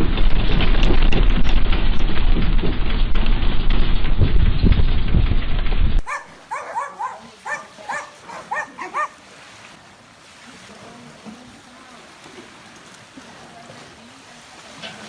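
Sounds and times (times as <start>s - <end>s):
high animal yelps: 6.0s - 9.3s.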